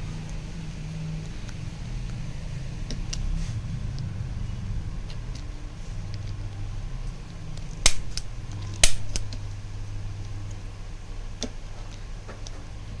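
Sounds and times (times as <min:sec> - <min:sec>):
steady low hum: 0:00.0 - 0:13.0
adjusting gun snapping: 0:07.9 - 0:09.4.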